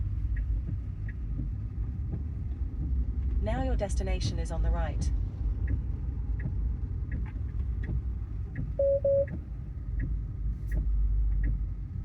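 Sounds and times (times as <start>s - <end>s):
car cabin and road noise: 0.0s - 12.0s
car turn signal ticking: 8.6s - 9.4s
short beeps: 8.8s - 9.3s.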